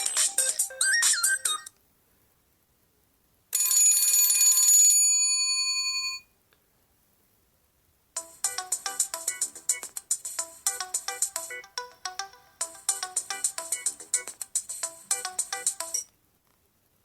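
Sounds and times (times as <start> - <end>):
bell-like ringtone chime: 3.6 - 6.2, 15.1 - 16.1
phone ringtone quick notes: 8.2 - 16.1.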